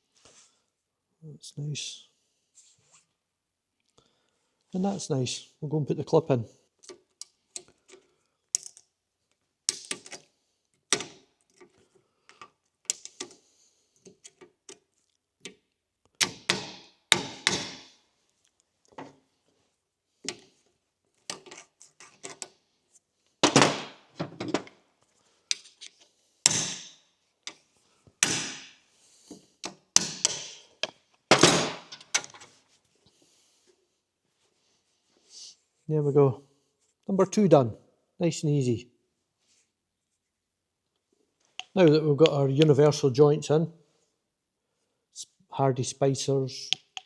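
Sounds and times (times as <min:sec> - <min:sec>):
metallic clicks and scrapes: 0:21.3 - 0:22.5.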